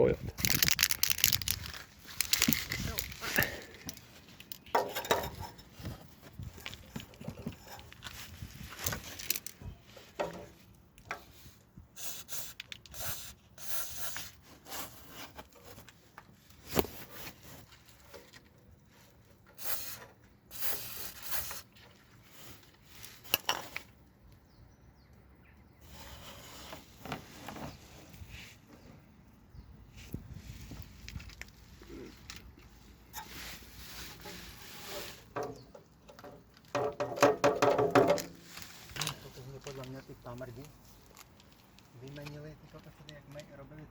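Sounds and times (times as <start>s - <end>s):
clinks and knocks on exhaust parts: 3.8s - 5.7s, 35.4s - 38.4s
short hissing bursts: 12.0s - 14.3s, 19.6s - 21.6s.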